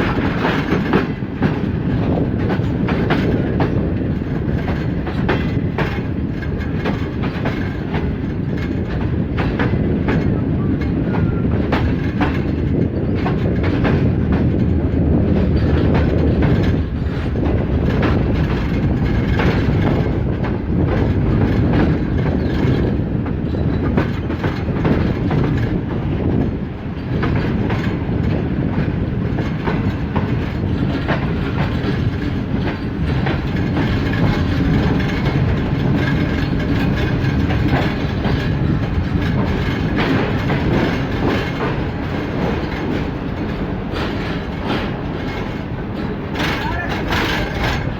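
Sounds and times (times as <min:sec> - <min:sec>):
train wheels clicking over rail joints: 0:00.0 - 0:47.9.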